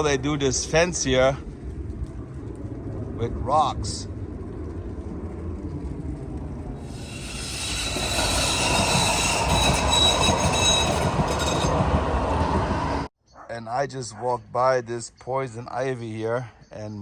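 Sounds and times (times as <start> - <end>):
train rumble: 0.0 - 13.1
metallic wheel squeal: 6.8 - 12.4.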